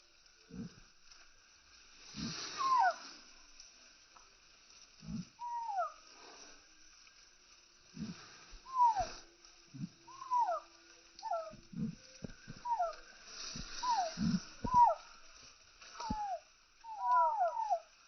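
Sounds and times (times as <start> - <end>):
chickens calling: 2.3 - 3.1, 10.1 - 15.1, 16.0 - 18.0.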